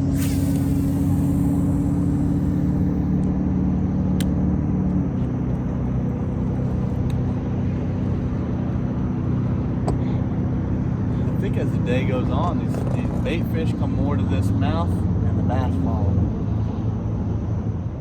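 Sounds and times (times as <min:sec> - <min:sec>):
boat motor humming: 0:00.0 - 0:03.3.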